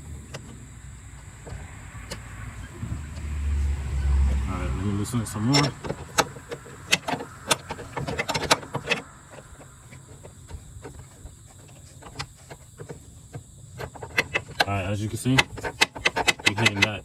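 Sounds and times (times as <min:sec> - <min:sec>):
wrench clicking on bolt: 0:05.4 - 0:11.0.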